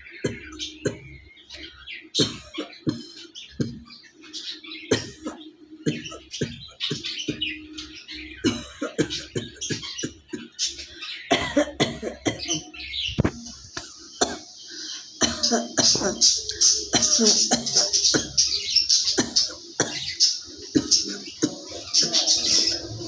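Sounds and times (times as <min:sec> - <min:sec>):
woman coughing: 0:11.3 - 0:12.6, 0:15.2 - 0:16.2.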